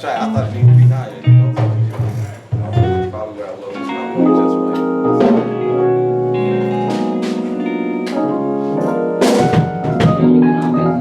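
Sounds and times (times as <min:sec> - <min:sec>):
keyboard chords: 0:00.0 - 0:11.0
drum and cymbal hits: 0:09.2 - 0:10.3.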